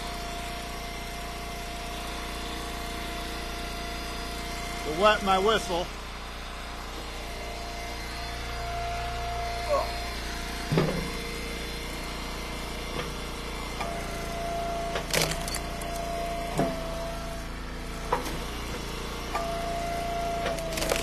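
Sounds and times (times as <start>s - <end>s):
wood splitter engine running: 0.0s - 21.0s
whining tone: 7.4s - 11.2s, 13.8s - 17.6s.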